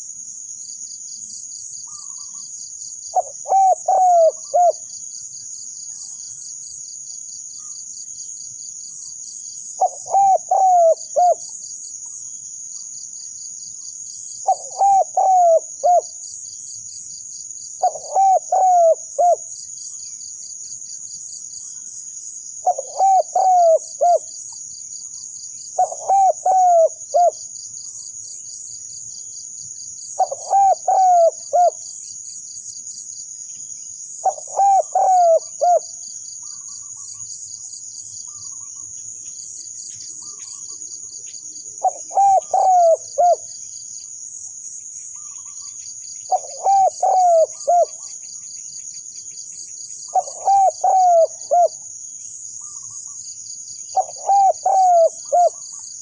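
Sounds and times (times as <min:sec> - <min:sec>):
insects trilling: 0:00.0 - 0:56.0
dove cooing: 0:03.1 - 0:04.9, 0:09.8 - 0:11.5, 0:14.4 - 0:16.2, 0:17.8 - 0:19.5, 0:22.6 - 0:24.3, 0:25.8 - 0:27.4, 0:30.2 - 0:31.8, 0:34.2 - 0:35.9, 0:41.8 - 0:43.5, 0:46.3 - 0:48.1, 0:50.1 - 0:51.8, 0:53.9 - 0:55.7.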